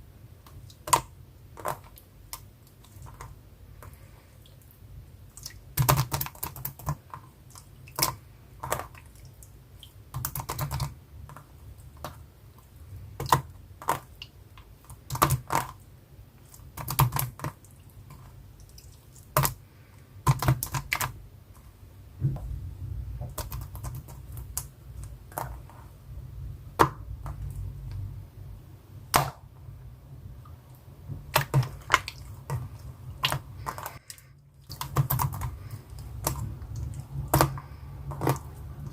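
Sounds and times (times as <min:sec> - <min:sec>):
steady low hum: 0:21.2 - 0:38.9.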